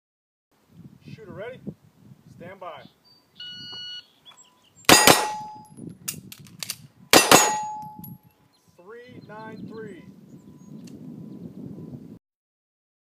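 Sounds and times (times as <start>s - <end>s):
shot timer beep: 3.4s - 4.0s
gunshots: 4.9s - 5.6s, 7.2s - 7.8s
metallic ring of steel targets: 4.9s - 5.8s, 7.1s - 8.2s.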